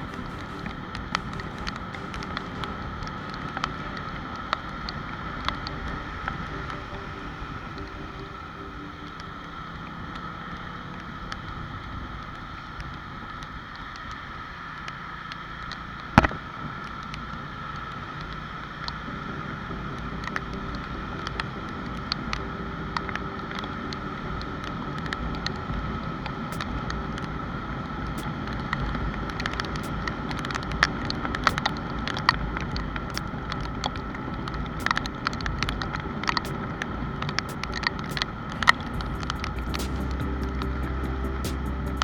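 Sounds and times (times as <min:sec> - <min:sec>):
motorcycle engine running: 0:38.8 - 0:42.0.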